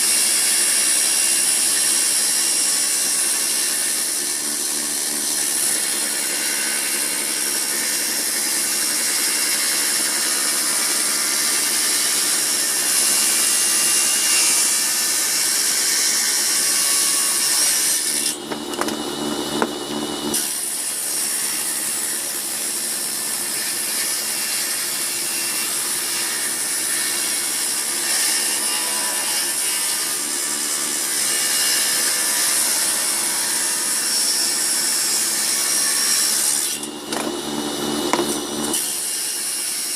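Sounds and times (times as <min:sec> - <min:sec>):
table saw cutting wood: 0:00.0 - 0:39.9.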